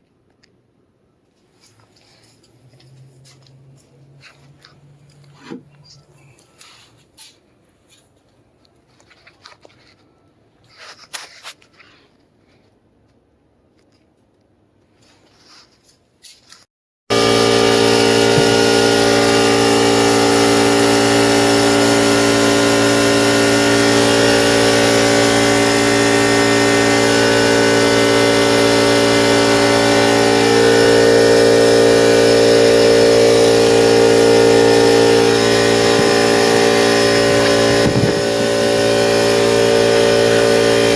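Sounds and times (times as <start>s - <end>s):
car engine idling: 17.1s - 40.9s.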